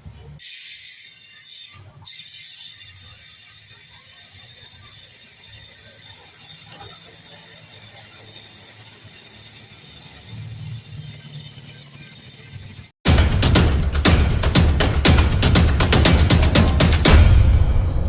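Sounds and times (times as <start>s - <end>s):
bicycle hub ratcheting clicks: 0.3s - 13.0s.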